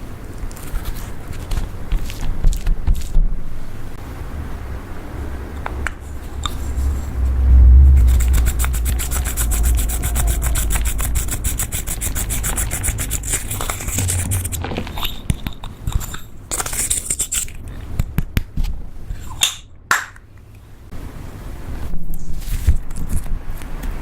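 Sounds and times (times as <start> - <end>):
rubbing and scraping slime: 7.5 - 15.3.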